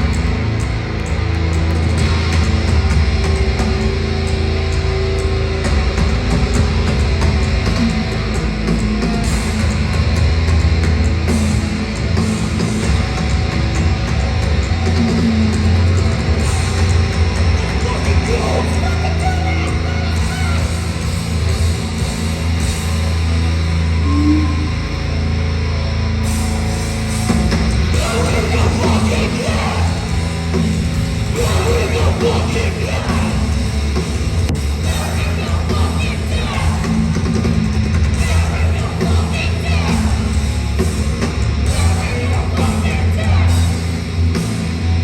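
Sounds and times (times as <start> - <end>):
distorted guitars and bass riff: 0.0 - 45.0
heavy metal band playing: 0.0 - 45.0
shouted vocals: 28.0 - 30.4, 31.3 - 33.6, 34.8 - 37.2, 38.2 - 40.4, 41.7 - 43.9.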